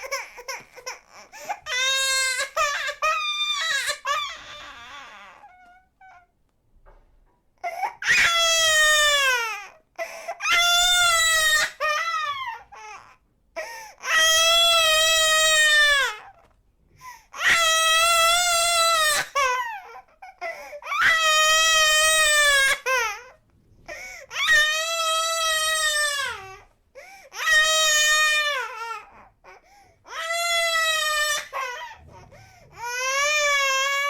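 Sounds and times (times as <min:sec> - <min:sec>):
baby crying: 0:00.0 - 0:06.3, 0:07.6 - 0:16.4, 0:17.3 - 0:34.0
baby gasping breaths: 0:23.8 - 0:24.3, 0:27.0 - 0:27.3.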